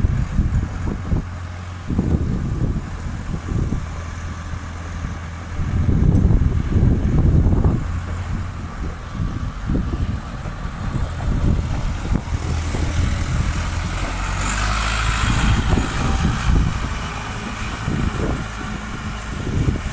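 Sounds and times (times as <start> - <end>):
diesel engine running: 0.0 - 19.9.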